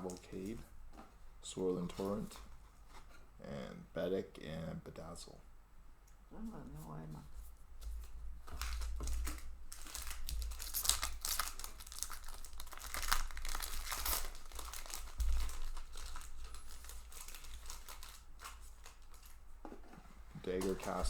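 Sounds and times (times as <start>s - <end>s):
foil wrapper tearing and crinkling: 8.4s - 19.4s.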